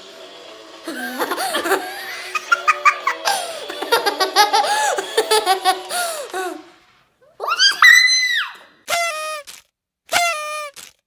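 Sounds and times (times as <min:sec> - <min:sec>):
children laughing: 0:00.8 - 0:09.4
toy music playing: 0:00.9 - 0:06.7.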